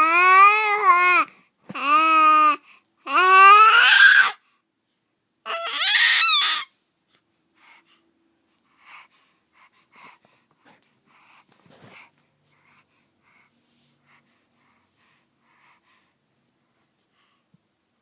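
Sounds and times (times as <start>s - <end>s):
baby squealing: 3.4s - 4.4s, 5.5s - 6.7s
baby breathing and gasping: 7.6s - 16.2s.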